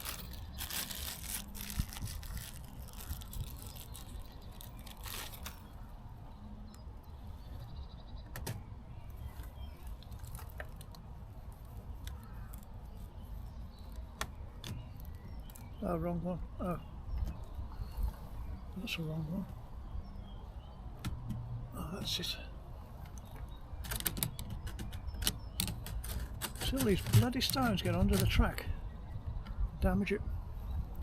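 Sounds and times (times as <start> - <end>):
metal parts and tools clicking: 0.0 - 5.6.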